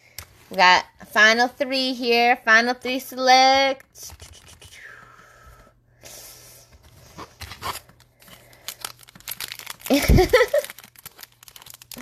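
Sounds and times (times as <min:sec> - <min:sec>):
foil wrapper crinkling and tearing: 0:07.3 - 0:12.0.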